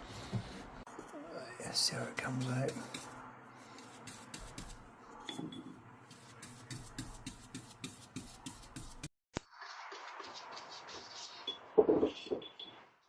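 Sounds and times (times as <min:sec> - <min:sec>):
scraping strokes on wood: 0:00.0 - 0:05.4, 0:06.1 - 0:09.1.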